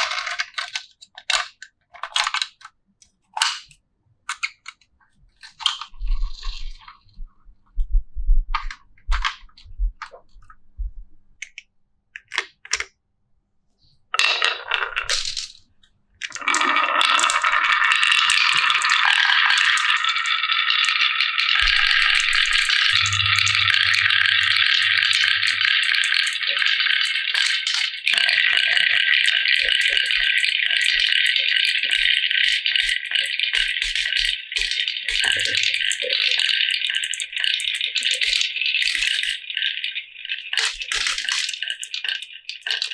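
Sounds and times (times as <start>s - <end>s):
marbles rattling down wooden track: 0.0s - 2.6s, 14.2s - 15.6s, 16.2s - 20.9s, 21.6s - 39.8s, 40.4s - 42.9s.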